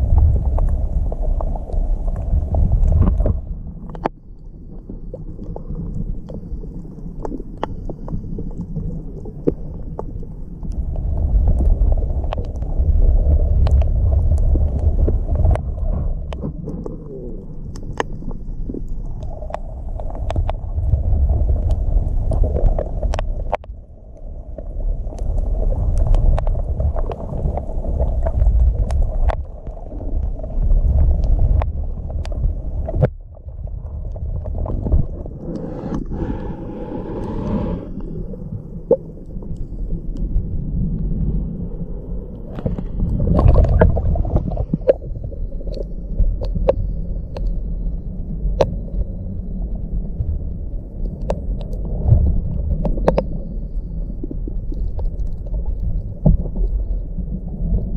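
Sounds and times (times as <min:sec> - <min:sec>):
underwater water surging: 0:32.2 - 0:38.9
bubbling: 0:34.0 - 0:38.2.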